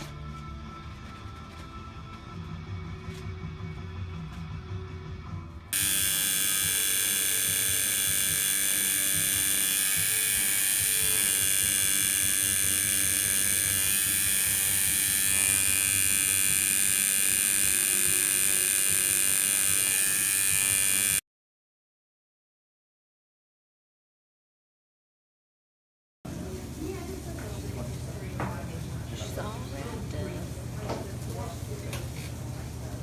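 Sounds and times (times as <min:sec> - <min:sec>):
tattoo machine buzzing: 0:05.7 - 0:21.2.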